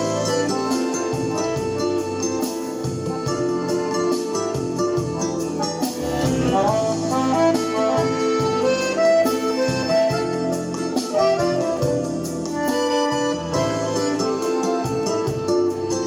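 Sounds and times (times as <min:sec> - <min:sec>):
accordion melody: 0:00.0 - 0:16.0
backing track with bass: 0:00.0 - 0:16.0.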